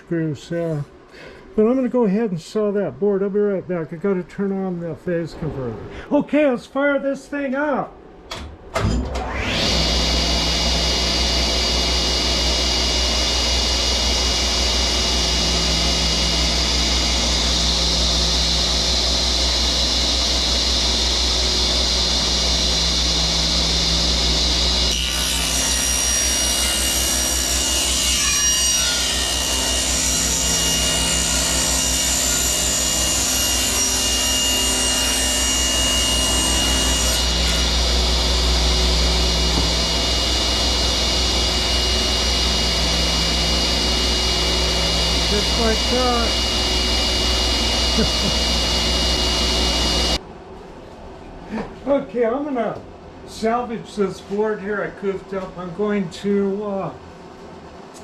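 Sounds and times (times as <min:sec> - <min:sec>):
saw cutting wooden board: 0:09.2 - 0:50.2
table saw motor humming: 0:09.2 - 0:50.2.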